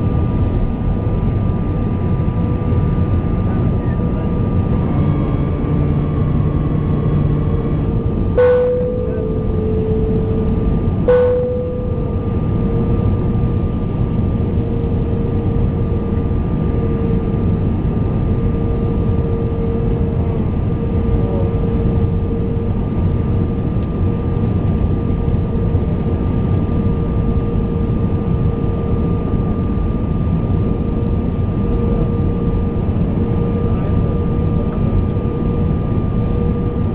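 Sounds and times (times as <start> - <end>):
airliner cabin engine rumble: 0.0 - 36.9
constant whine: 0.0 - 36.9.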